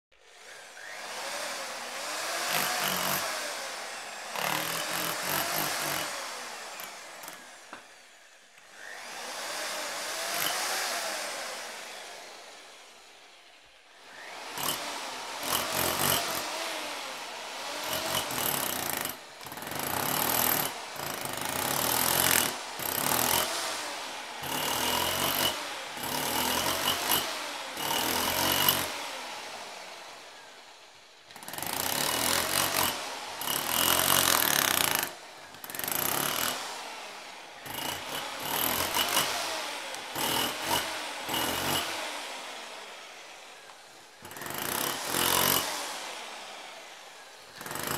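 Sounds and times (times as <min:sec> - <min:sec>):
hammer drill breaking concrete: 0:02.4 - 0:03.4, 0:04.3 - 0:07.5, 0:10.2 - 0:10.7, 0:14.5 - 0:16.5, 0:17.8 - 0:23.5, 0:24.4 - 0:28.9, 0:31.3 - 0:36.6, 0:37.6 - 0:42.0, 0:44.2 - 0:45.7, 0:47.5 - 0:47.9.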